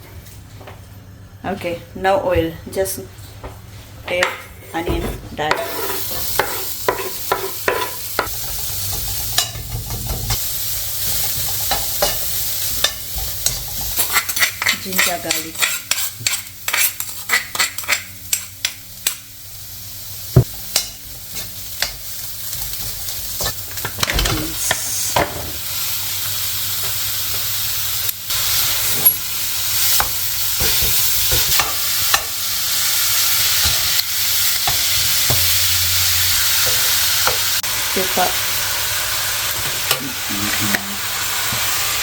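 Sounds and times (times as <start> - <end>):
utensil tapping and scraping pan: 5.5 - 10.4
mince sizzling in a pan: 5.5 - 42.0.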